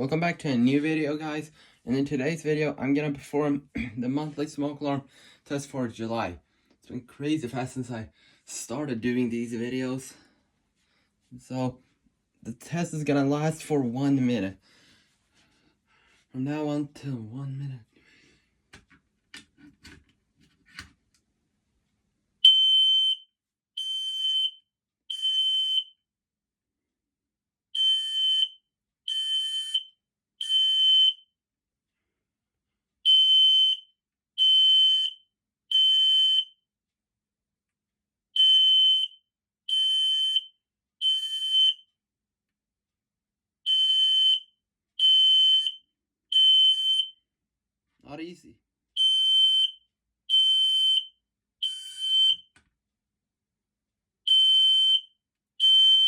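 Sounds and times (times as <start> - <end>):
smoke alarm beeping: 22.5 - 23.2, 23.8 - 25.9, 27.8 - 31.2, 33.1 - 33.8, 34.4 - 36.5, 38.4 - 41.8, 45.0 - 47.1, 49.0 - 49.7, 50.3 - 52.5, 54.3 - 56.0.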